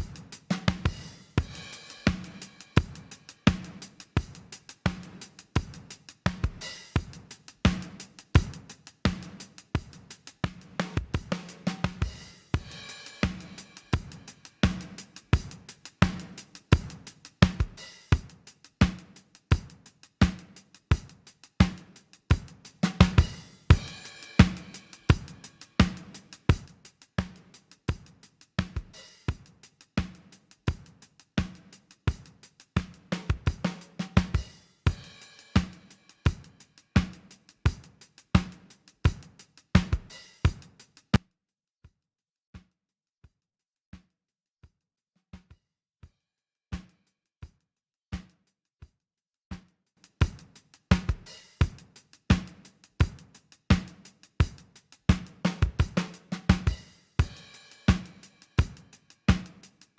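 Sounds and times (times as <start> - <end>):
drum kit playing groove: 0.0 - 41.2, 49.5 - 59.9.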